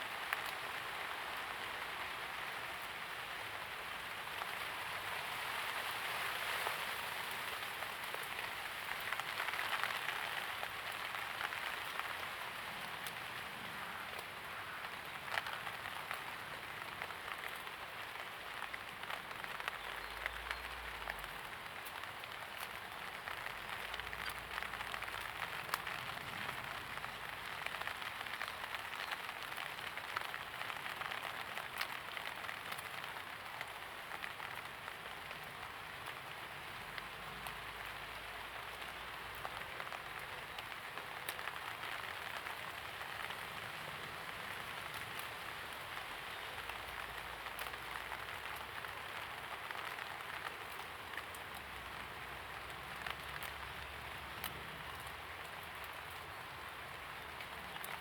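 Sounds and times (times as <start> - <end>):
light rain patter: 0.0 - 58.0.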